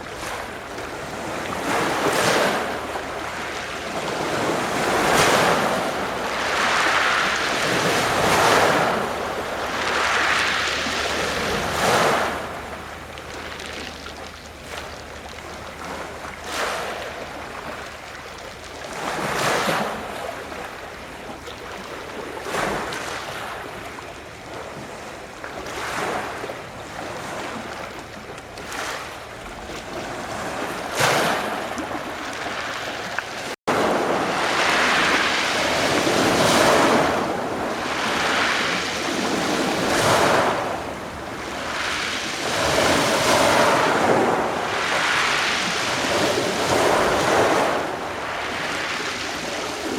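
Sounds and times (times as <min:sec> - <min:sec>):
sea waves washing onto shore: 0:00.0 - 0:49.9.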